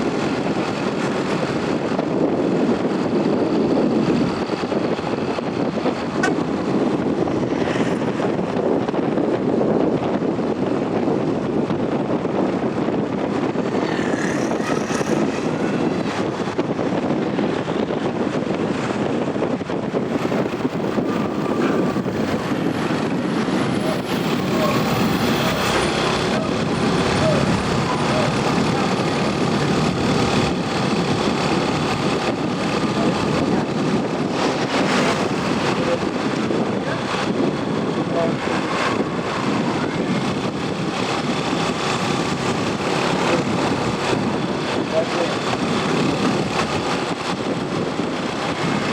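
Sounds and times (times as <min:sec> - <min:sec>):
road traffic rushing past: 0:00.0 - 0:09.7, 0:12.6 - 0:48.9
wind on microphone: 0:00.0 - 0:48.9
vehicle engines idling: 0:12.7 - 0:48.9.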